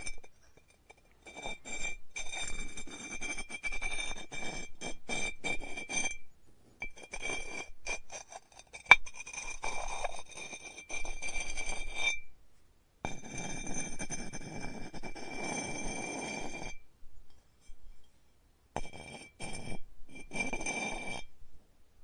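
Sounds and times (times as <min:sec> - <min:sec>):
rapid clinks and scrapes: 0:00.0 - 0:06.2, 0:06.8 - 0:12.2, 0:18.8 - 0:21.3.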